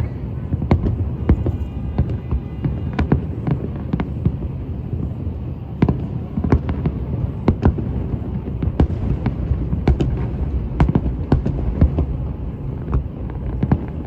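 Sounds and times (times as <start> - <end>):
fireworks bangs: 0.0 - 14.0.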